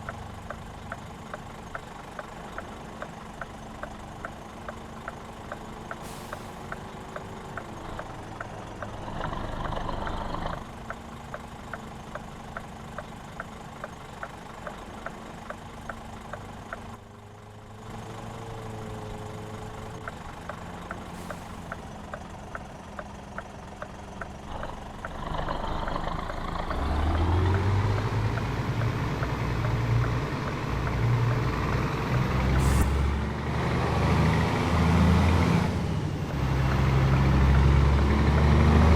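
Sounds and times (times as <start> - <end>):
light ticking: 0.0 - 9.0, 10.4 - 17.0, 19.6 - 25.2, 25.8 - 31.8
diesel truck engine running: 0.0 - 38.9.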